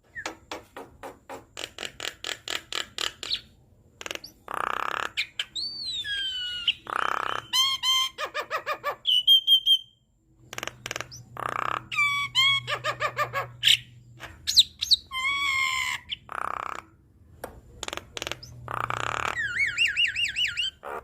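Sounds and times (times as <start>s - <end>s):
bird singing varied song: 3.1s - 16.4s, 17.8s - 21.0s.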